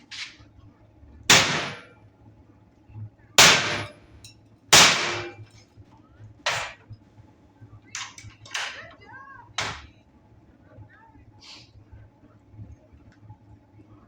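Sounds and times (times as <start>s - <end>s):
sharp impacts: 1.3s - 1.9s, 3.4s - 4.0s, 4.8s - 5.5s.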